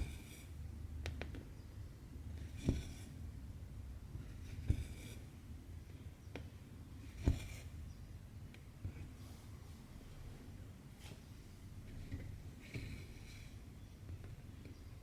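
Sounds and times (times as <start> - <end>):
needle tapping through fabric: 2.6 - 3.0, 7.2 - 7.6.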